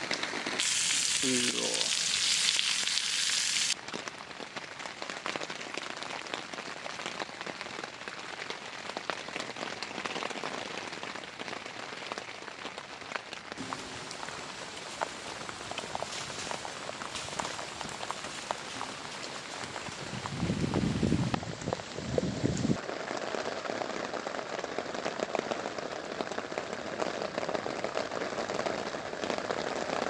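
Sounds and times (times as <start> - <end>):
rain hissing: 0.0 - 3.8, 13.6 - 22.9
high sizzling hiss: 0.6 - 3.8, 13.6 - 22.8.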